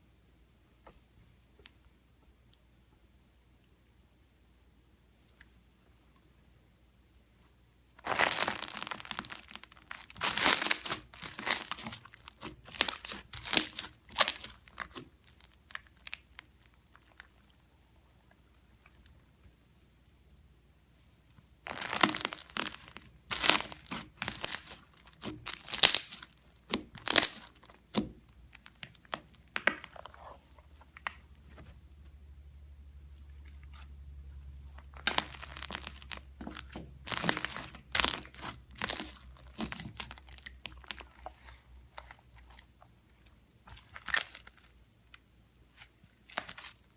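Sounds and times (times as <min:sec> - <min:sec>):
slime squeezed by hand: 0:08.0 - 0:17.6, 0:21.7 - 0:31.7.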